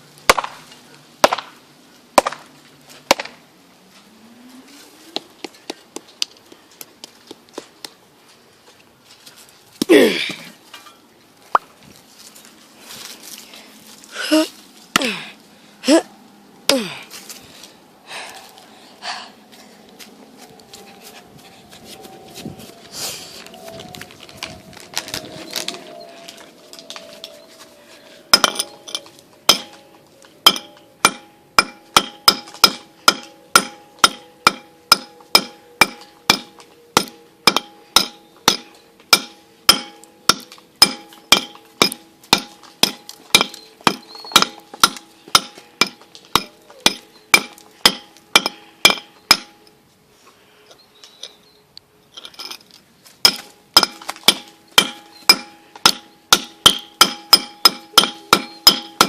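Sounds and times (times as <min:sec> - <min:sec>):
sharp ringing metallic knocks: 0:28.3 - 0:49.6, 0:53.2 - 0:59.0.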